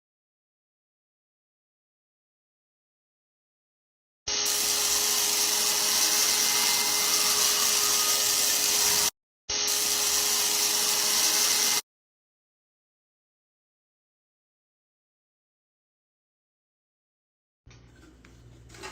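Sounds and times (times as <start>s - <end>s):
vacuum cleaner running: 4.3s - 11.8s.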